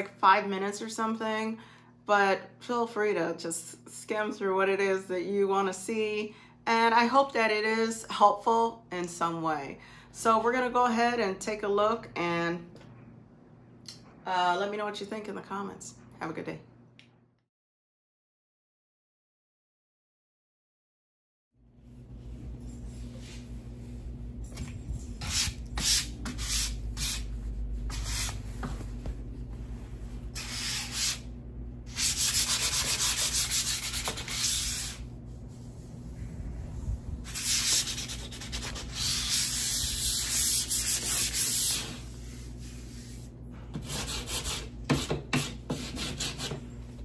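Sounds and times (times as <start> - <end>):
faint steady hum: 21.6 - 47.0
sandpaper rubbing on wood: 25.2 - 28.4, 30.4 - 31.2, 31.9 - 35.0, 37.3 - 41.9, 43.8 - 44.7.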